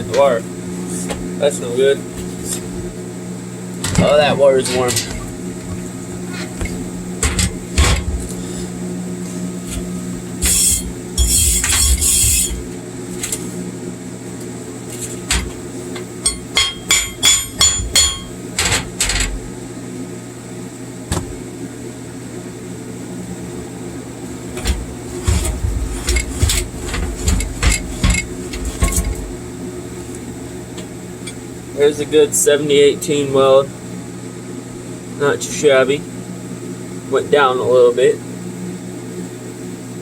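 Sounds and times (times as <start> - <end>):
electrical hum: 0.0 - 40.0
hammer tapping metal weld: 16.2 - 18.7.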